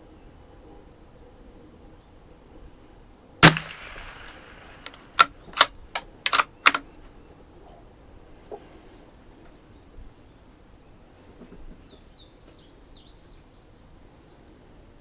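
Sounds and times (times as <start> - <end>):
rifle shot: 3.4 - 5.7
rifle bolt clicks: 3.4 - 6.8.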